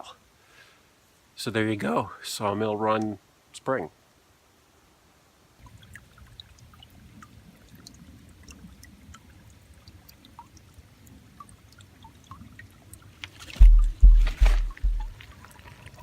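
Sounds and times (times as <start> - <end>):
water trickling: 5.6 - 16.0.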